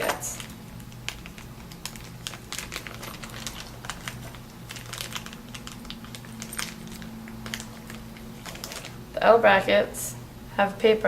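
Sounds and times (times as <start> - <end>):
plastic bag crinkling: 0.0 - 9.0.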